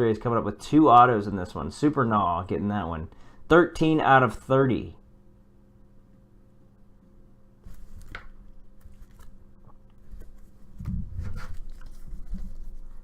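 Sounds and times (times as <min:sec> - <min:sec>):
cards rustling and clicking: 0:07.7 - 0:09.4.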